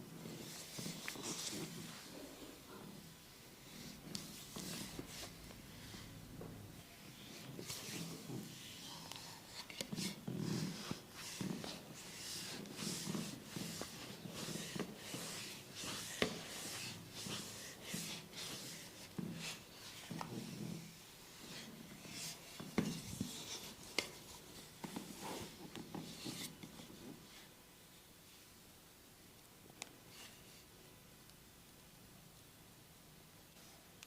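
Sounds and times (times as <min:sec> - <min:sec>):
hands rubbing skin: 0:07.3 - 0:20.8.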